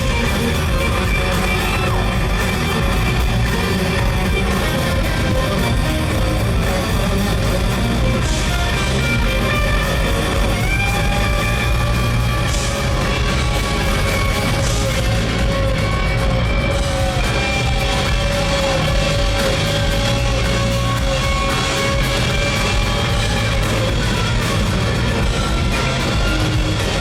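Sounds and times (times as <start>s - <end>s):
electric guitar: 0.0s - 27.0s
rock band playing live: 0.0s - 27.0s.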